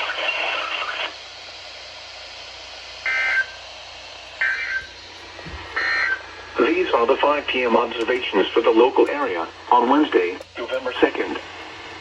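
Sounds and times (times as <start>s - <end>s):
radio receiver hiss: 0.0s - 1.2s, 4.4s - 12.0s.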